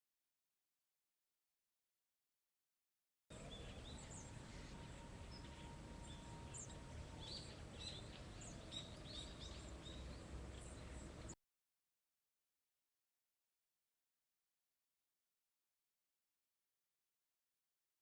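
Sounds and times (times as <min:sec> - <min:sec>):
low outdoor rumble: 0:03.3 - 0:11.4
small birds chirping: 0:03.3 - 0:11.4.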